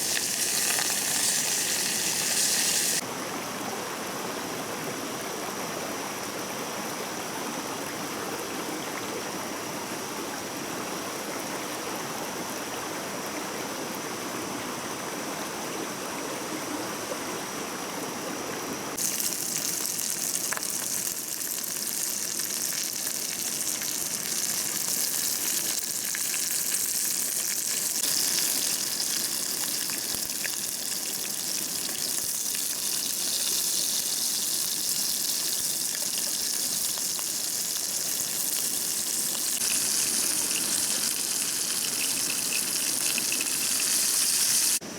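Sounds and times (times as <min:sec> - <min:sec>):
stream water rushing: 0:36.8 - 0:44.9.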